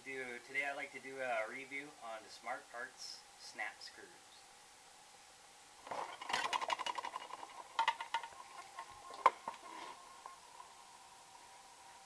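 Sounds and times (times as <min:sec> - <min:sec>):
faint steady whine: 0:00.0 - 0:12.0
small hard parts clicking and rattling: 0:05.8 - 0:10.4.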